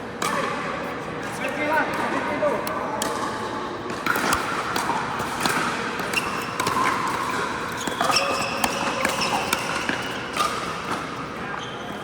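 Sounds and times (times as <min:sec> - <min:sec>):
ball bouncing on court: 0:01.5 - 0:11.0
shoes squeaking: 0:06.1 - 0:10.4.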